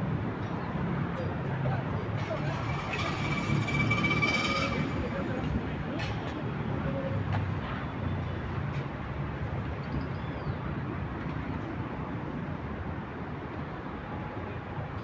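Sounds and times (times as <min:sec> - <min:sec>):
low rumble of road traffic: 0:00.0 - 0:15.0
faint high squeal: 0:02.2 - 0:05.5.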